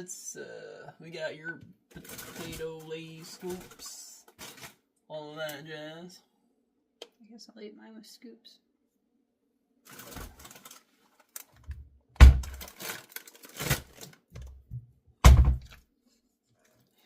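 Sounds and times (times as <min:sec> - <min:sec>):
kitchen items knocking and thudding: 0:11.6 - 0:15.8.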